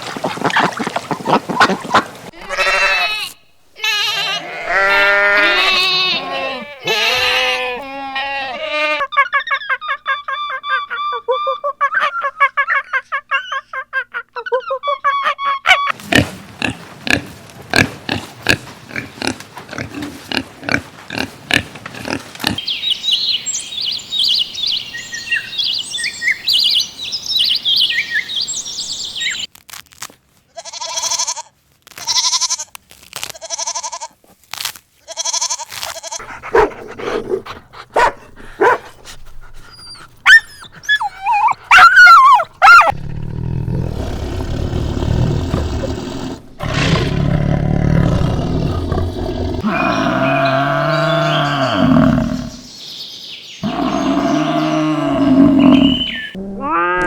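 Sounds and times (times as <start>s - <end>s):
pitched animal calls: 1.3s - 12.6s, 39.5s - 43.0s, 43.6s - 52.6s, 53.6s - 57.0s
animal yelping and whining: 36.1s - 38.8s, 39.4s - 43.0s, 53.6s - 57.0s
pig grunting: 36.2s - 41.8s, 42.7s - 52.6s, 53.6s - 57.0s
high chirping: 53.6s - 56.4s.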